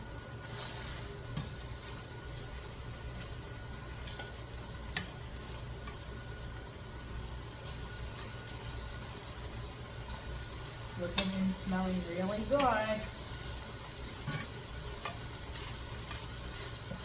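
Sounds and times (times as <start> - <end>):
chicken sizzling in a pan: 0.0 - 17.0
steady low hum: 0.0 - 17.0
utensil clicking against pan: 4.0 - 5.2, 11.0 - 11.4, 14.3 - 15.3.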